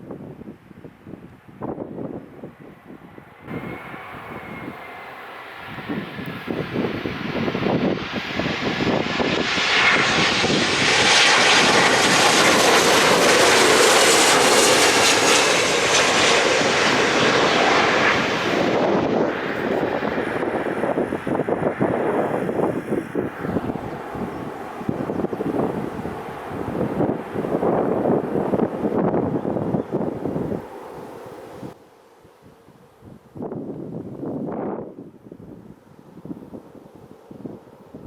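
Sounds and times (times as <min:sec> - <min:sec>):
wind buffeting microphone: 0:00.0 - 0:31.8, 0:32.6 - 0:38.0
aircraft engine noise: 0:01.6 - 0:31.8.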